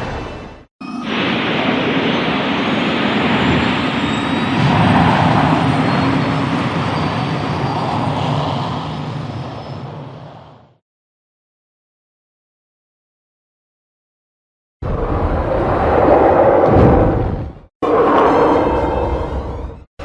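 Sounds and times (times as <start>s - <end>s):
jet engine roar: 0.0s - 10.8s, 14.8s - 19.9s.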